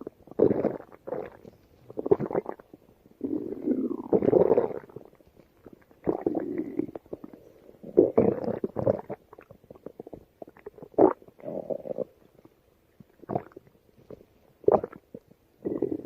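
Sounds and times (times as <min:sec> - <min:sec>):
stomach growling: 0:00.0 - 0:16.0.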